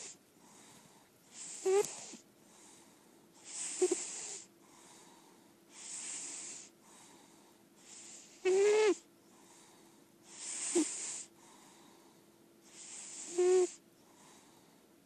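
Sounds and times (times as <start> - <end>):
cat snoring: 1.3 - 2.8, 3.4 - 11.8, 12.7 - 14.7.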